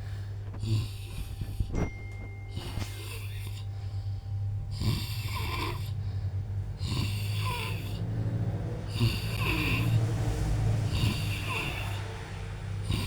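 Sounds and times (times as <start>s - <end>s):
steady low hum: 0.0s - 13.0s
man snoring: 0.6s - 1.5s, 4.6s - 6.0s, 6.6s - 13.0s.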